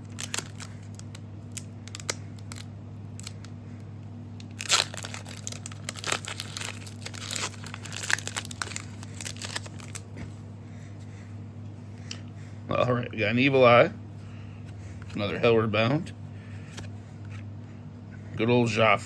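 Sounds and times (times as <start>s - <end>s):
foil wrapper tearing and crinkling: 0.0s - 3.5s, 4.4s - 10.1s
cards being handled: 16.6s - 17.4s.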